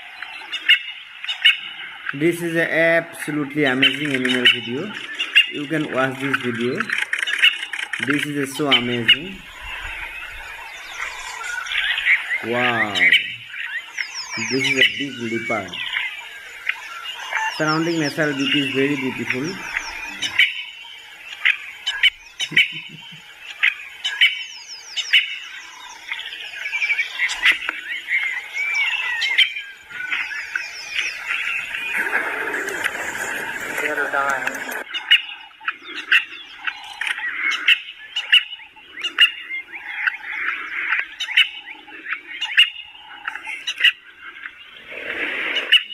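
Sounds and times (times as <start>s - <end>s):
birds chirping and trilling: 0.0s - 45.9s
low bird call: 0.0s - 45.9s
low animal chatter: 2.1s - 13.5s, 14.1s - 16.1s, 16.7s - 20.6s, 21.9s - 23.7s, 31.0s - 35.1s.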